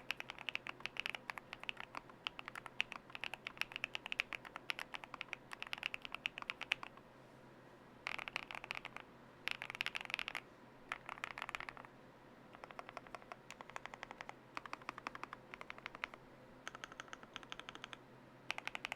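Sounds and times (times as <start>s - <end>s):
mechanical keyboard typing: 0.0s - 7.0s, 8.1s - 11.9s, 12.5s - 18.9s.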